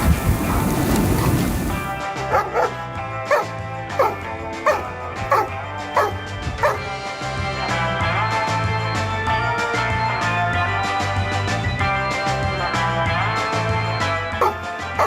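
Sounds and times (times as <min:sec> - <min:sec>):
steady rushing noise: 0:00.0 - 0:02.0
background music: 0:00.0 - 0:15.0
dog barking: 0:02.2 - 0:06.8, 0:14.4 - 0:15.0.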